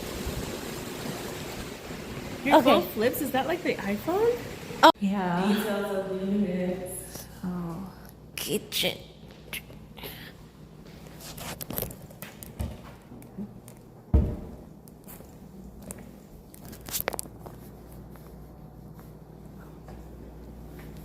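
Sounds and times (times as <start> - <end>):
footsteps: 10.8 - 21.0.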